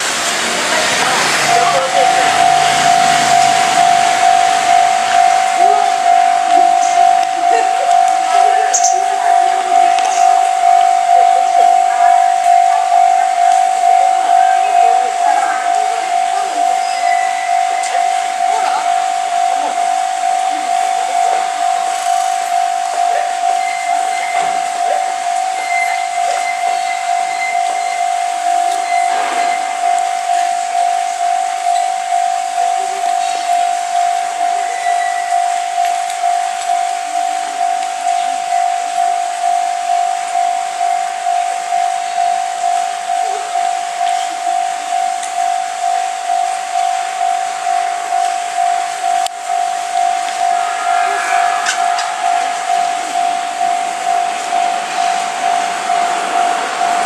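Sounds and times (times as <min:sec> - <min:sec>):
steady rushing noise: 0:00.0 - 0:08.2, 0:48.6 - 0:57.0
level crossing warning bell ringing: 0:00.0 - 0:57.0
brief squeal: 0:50.4 - 0:53.5.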